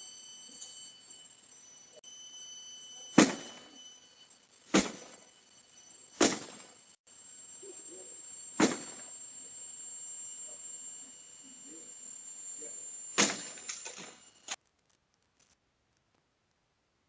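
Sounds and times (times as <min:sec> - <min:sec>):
sharp blows on a truck: 0:03.1 - 0:03.7.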